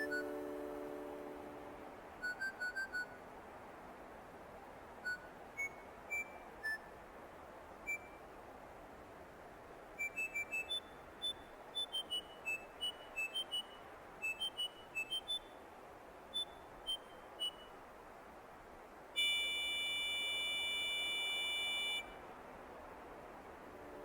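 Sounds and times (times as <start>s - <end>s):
long steady electronic beep: 0.0s - 3.1s, 16.3s - 17.7s.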